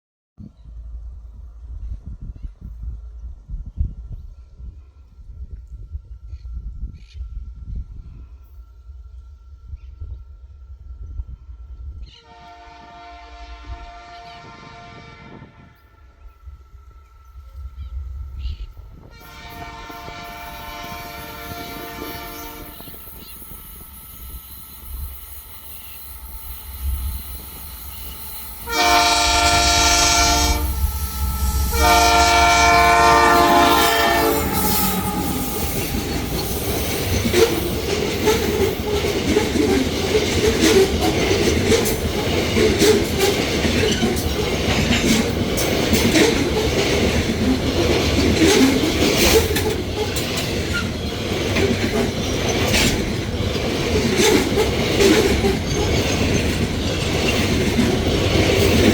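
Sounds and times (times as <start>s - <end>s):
locomotive rumble: 0.4s - 58.9s
train horn blasts: 12.1s - 16.3s, 19.0s - 39.0s
wagons rumbling: 27.1s - 58.9s.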